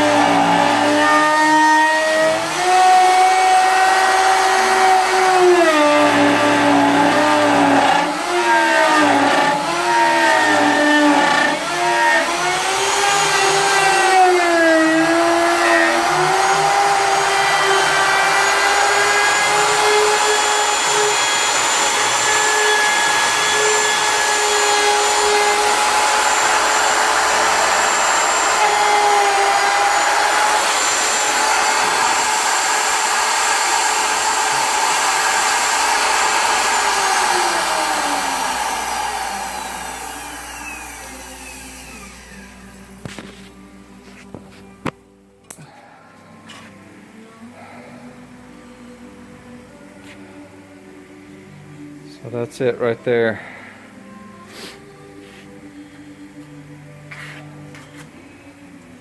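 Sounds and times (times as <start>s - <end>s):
wood router whining: 0.0s - 43.7s.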